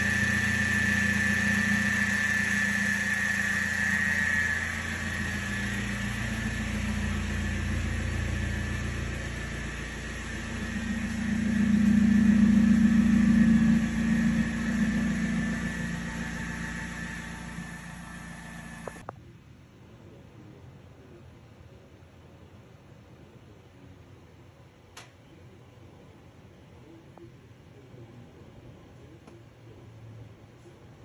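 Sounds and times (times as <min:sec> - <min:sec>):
car engine with noisy exhaust: 0:00.0 - 0:19.1
steady high whine: 0:00.0 - 0:19.2.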